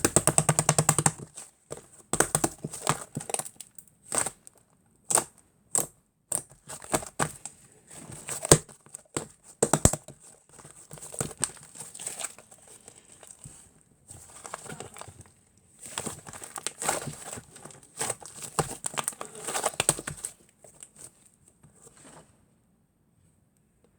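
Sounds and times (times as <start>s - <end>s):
sticky clicks and crackles: 0.0s - 7.5s, 8.2s - 13.6s, 14.2s - 21.1s
hands squishing slime: 5.1s - 21.1s.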